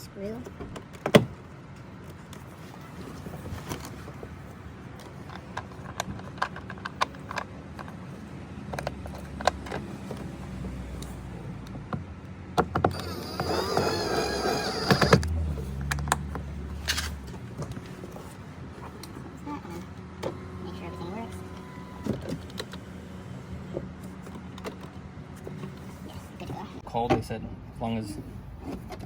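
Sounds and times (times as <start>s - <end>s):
wavering whine: 12.9s - 15.2s.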